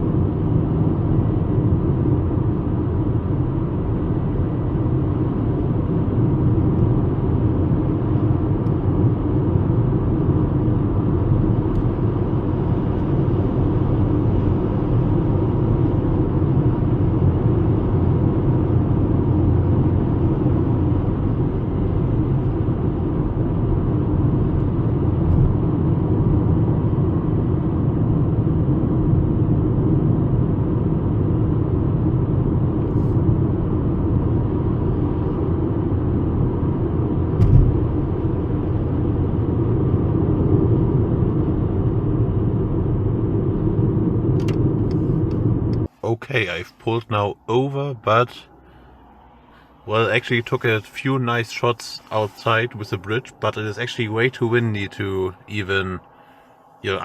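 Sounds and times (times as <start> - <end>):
car engine and tyres rumbling: 0.0 - 57.0.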